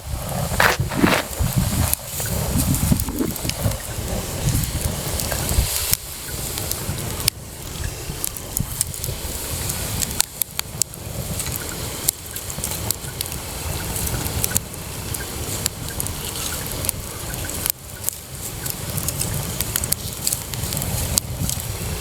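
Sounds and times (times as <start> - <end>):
bonfire crackling and popping: 0.0 - 22.0
low fire rumble: 0.0 - 22.0.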